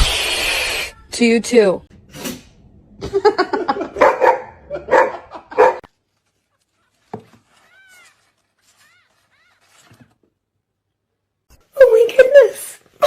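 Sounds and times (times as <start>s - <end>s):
dog barking: 3.9s - 5.9s.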